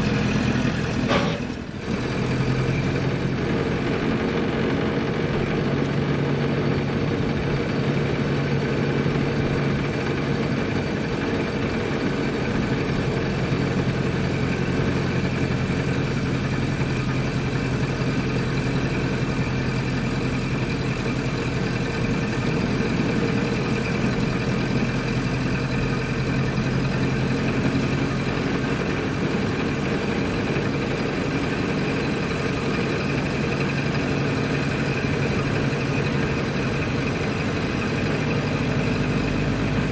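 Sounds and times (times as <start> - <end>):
car engine running: 0.0 - 39.9.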